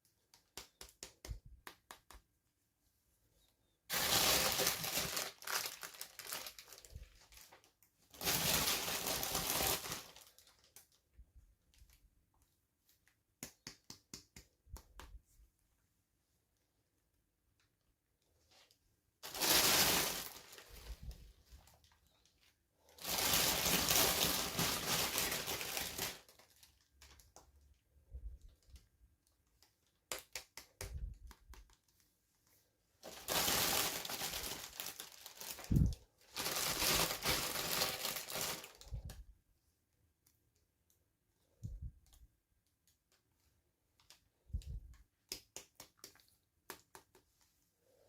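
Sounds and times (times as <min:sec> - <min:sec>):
packaging crinkling and tearing: 0:03.9 - 0:11.0, 0:19.2 - 0:22.4, 0:23.0 - 0:27.3, 0:33.0 - 0:38.9.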